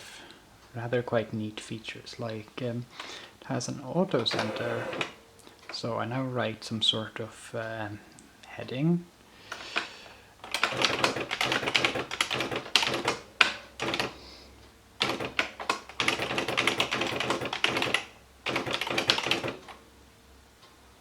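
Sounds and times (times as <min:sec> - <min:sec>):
electric typewriter keystrikes: 0:04.2 - 0:05.2, 0:10.4 - 0:14.2, 0:15.0 - 0:19.8.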